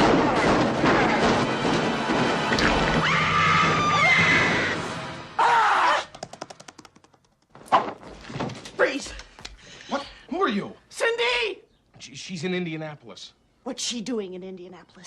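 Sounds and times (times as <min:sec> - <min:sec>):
washing machine crashing and banging: 0:00.0 - 0:04.5
film music: 0:00.0 - 0:05.9.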